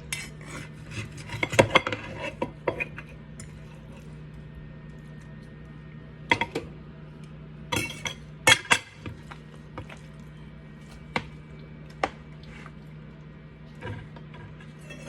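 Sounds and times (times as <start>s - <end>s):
steady low hum: 0.0s - 15.0s
dishes and cutlery clattering: 13.8s - 15.0s.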